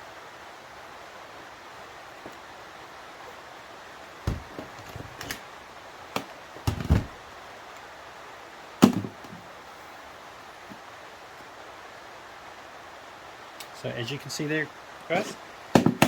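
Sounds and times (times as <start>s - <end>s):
seatbelt parts knocking: 4.3s - 5.3s.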